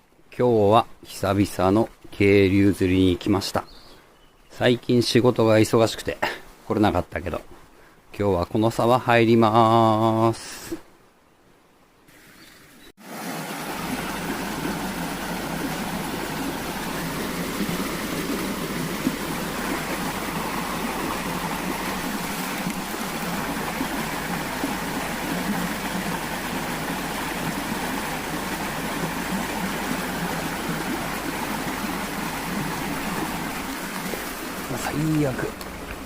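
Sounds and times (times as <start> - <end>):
stream water rushing: 12.1 - 36.0.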